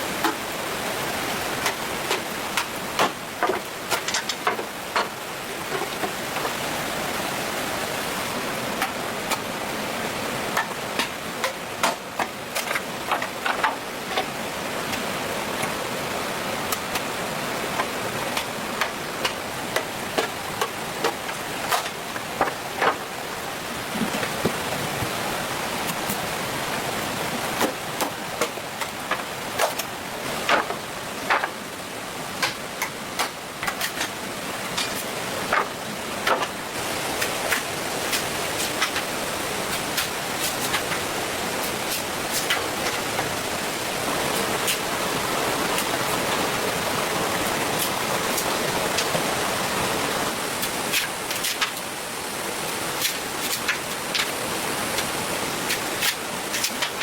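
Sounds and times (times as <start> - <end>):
steady hiss: 0.0 - 57.0
sharp knocks and clicks: 1.6 - 6.6, 27.6 - 31.6, 32.4 - 34.2.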